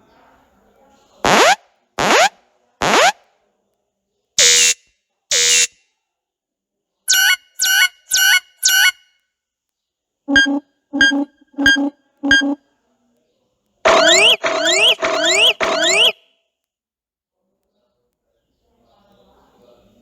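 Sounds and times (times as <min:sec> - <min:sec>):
pitched chirps: 0:04.4 - 0:05.8, 0:07.1 - 0:09.0, 0:10.3 - 0:12.6, 0:13.9 - 0:16.2
short buzzy beeps: 0:10.3 - 0:12.6, 0:13.9 - 0:16.2.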